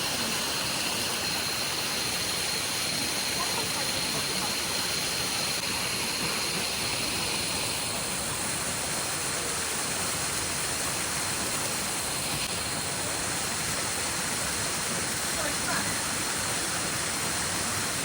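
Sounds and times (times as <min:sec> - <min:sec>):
waterfall rushing over rocks: 0:00.0 - 0:18.0.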